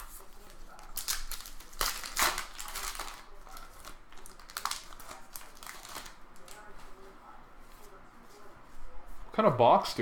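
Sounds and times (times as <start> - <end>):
card wrappers rustling and crinkling: 0.0 - 7.1.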